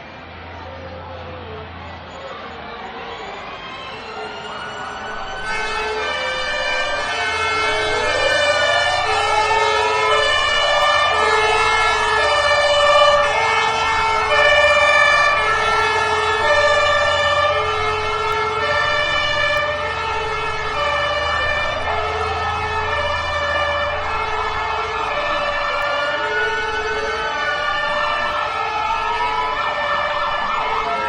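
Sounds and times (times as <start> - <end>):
two-tone siren: 0.0 - 31.0
wailing siren: 0.0 - 31.0
low engine rumble: 4.9 - 31.0.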